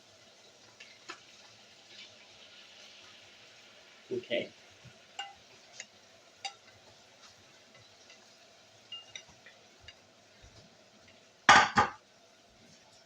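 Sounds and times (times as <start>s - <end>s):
cookware and utensils clinking: 5.1s - 6.8s, 7.7s - 10.5s, 11.5s - 12.0s.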